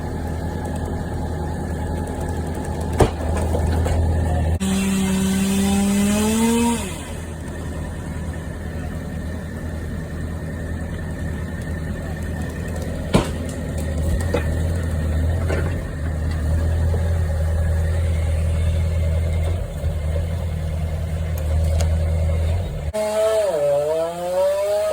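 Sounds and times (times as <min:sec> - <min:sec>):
large engine humming: 0:00.0 - 0:24.9
sharp knocks: 0:13.1 - 0:13.6.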